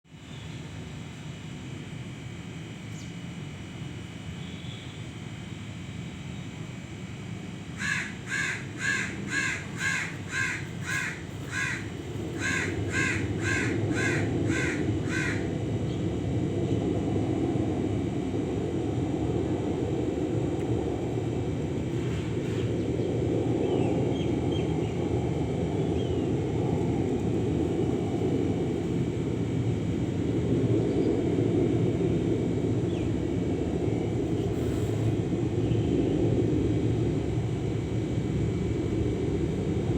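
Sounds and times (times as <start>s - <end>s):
crow cawing: 7.8s - 15.5s
steady low rumble: 8.2s - 39.9s.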